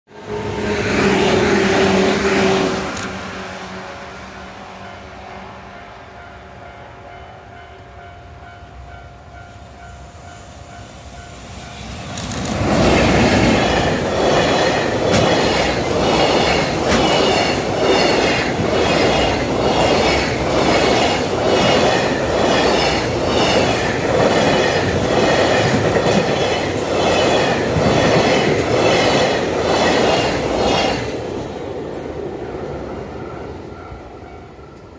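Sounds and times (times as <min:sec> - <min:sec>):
train wheels clattering over rail joints: 0:12.2 - 0:30.8.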